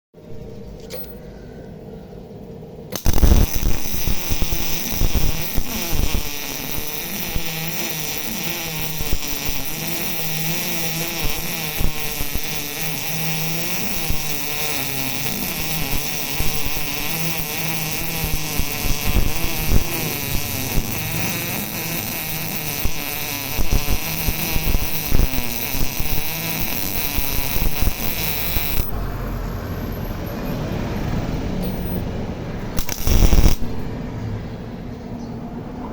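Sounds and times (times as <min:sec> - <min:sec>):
welding arc crackling buzz: 0:02.9 - 0:29.6, 0:31.0 - 0:34.3.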